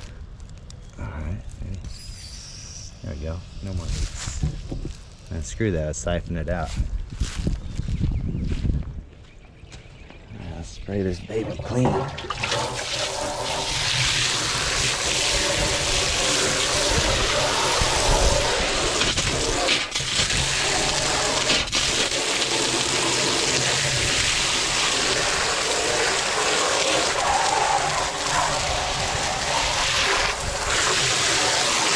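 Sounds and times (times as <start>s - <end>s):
hose spraying water into drum: 11.5s - 31.9s.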